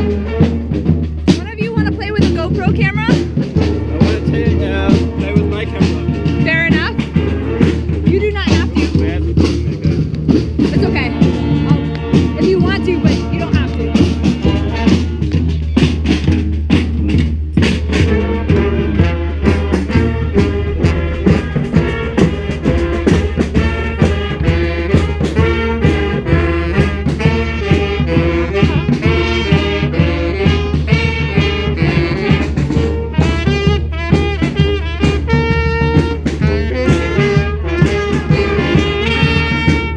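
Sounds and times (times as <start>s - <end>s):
drums steady beat: 0.0s - 39.9s
horns playing melody: 0.0s - 39.9s
low bass line: 2.1s - 30.8s.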